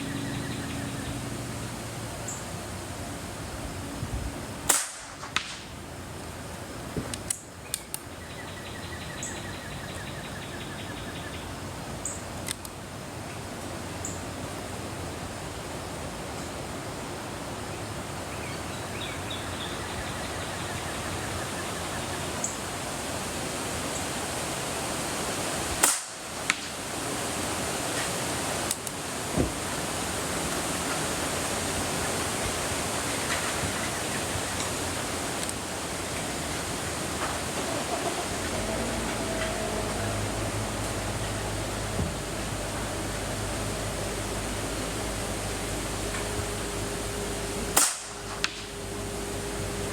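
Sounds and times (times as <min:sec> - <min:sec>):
airgun shot: 0:04.7 - 0:05.7, 0:25.8 - 0:26.2, 0:47.8 - 0:48.7.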